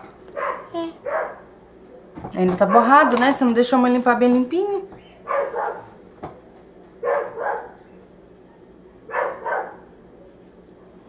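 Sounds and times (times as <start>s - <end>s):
dog barking: 0.4s - 1.5s, 2.7s - 3.0s, 5.2s - 6.0s, 7.0s - 7.8s, 9.1s - 9.9s.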